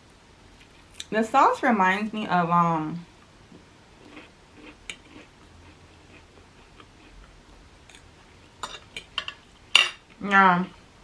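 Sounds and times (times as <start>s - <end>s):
faint chewing: 4.0s - 9.1s.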